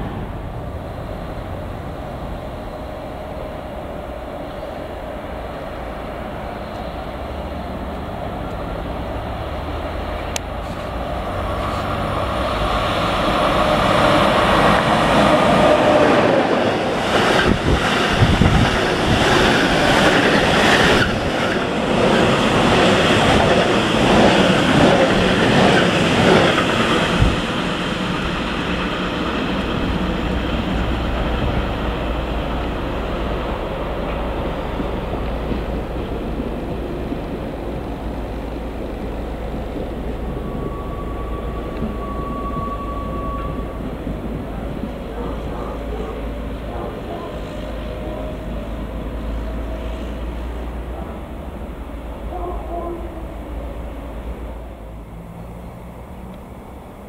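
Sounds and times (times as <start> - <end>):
train passing: 0.0 - 57.0.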